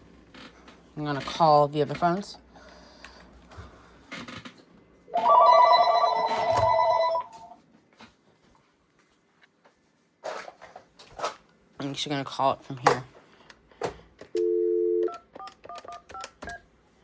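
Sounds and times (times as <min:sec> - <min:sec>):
telephone ringing: 0:05.1 - 0:07.6, 0:14.3 - 0:16.3.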